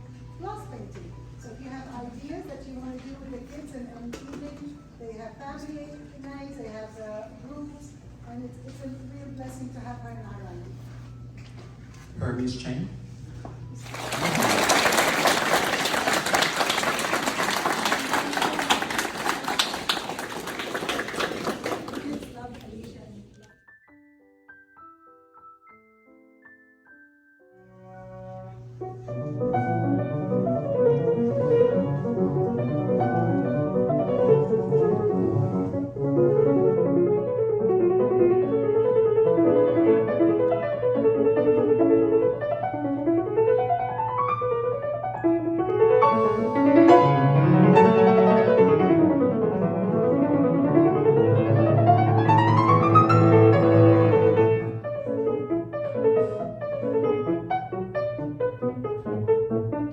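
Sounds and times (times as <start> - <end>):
piano music: 0.0 - 59.9.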